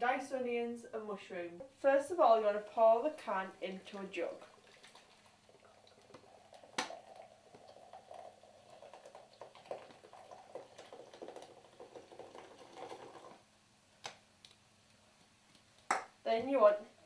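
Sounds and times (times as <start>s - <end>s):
soda pouring with fizzy crackling: 4.3s - 13.5s.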